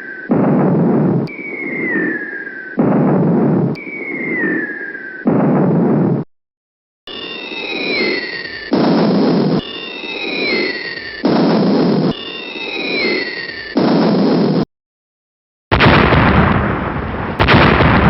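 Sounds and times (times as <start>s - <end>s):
descending bomb whistle: 0.0s - 5.4s, 7.1s - 13.7s
rumbling blast: 0.3s - 1.3s, 2.8s - 3.7s, 15.7s - 18.0s.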